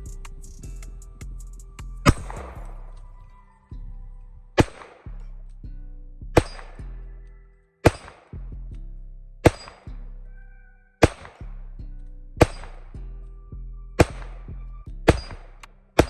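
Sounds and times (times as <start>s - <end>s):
background music with bass line: 0.0s - 16.0s
pistol shots with echo: 4.6s - 5.1s, 7.8s - 8.3s, 11.0s - 11.4s, 14.0s - 14.4s.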